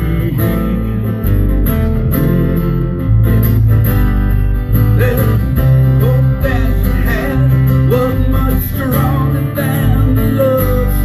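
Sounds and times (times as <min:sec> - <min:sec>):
guitar chords: 0:00.0 - 0:11.0
low bass: 0:00.0 - 0:11.0
person singing: 0:05.0 - 0:11.0.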